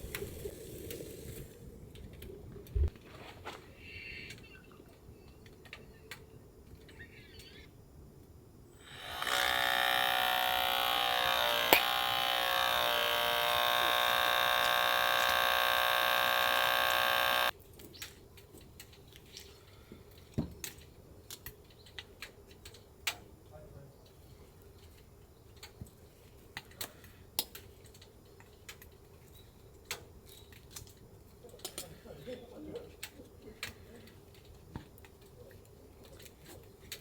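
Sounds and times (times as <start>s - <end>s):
small electric motor buzzing: 8.8s - 17.5s.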